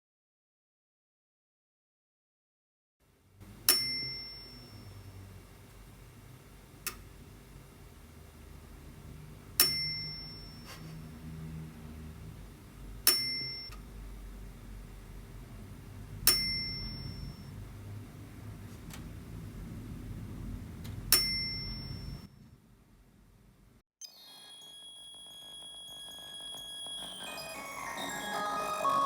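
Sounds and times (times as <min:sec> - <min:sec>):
small metallic bell ding: 0:03.7 - 0:05.0, 0:09.7 - 0:10.7, 0:16.3 - 0:17.5, 0:21.2 - 0:22.3.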